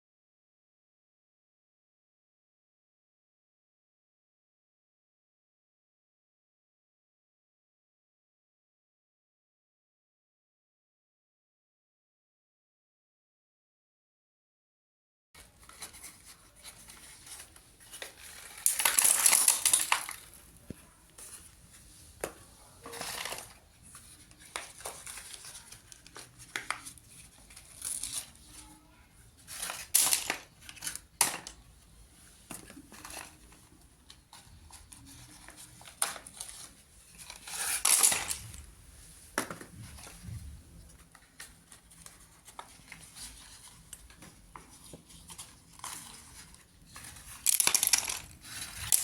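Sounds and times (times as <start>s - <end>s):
slate pencils crunching: 15.8s - 20.7s, 22.8s - 28.6s, 29.4s - 31.7s, 34.4s - 38.7s, 45.2s - 49.0s.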